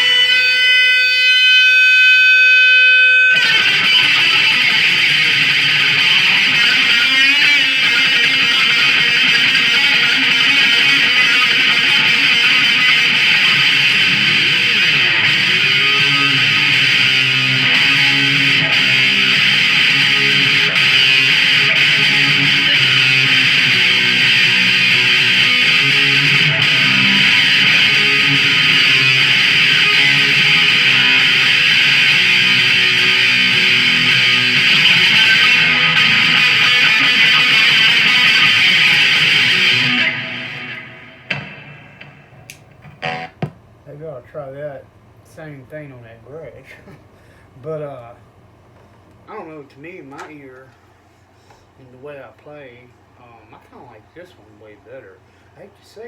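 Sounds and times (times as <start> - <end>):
electric guitar playing: 0.0 - 43.8.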